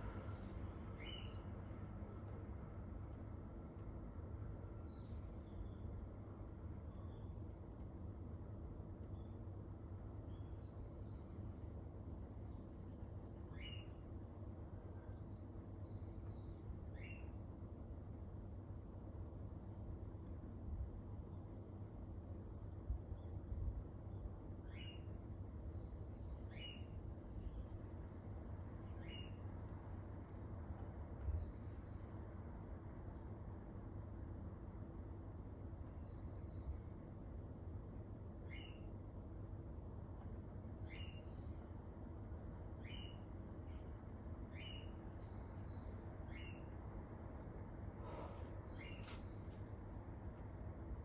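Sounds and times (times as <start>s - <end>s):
low room hum: 0.0s - 51.0s
faint bird chirps through ceiling: 13.5s - 14.0s, 40.8s - 41.6s, 42.7s - 46.8s, 48.3s - 49.5s.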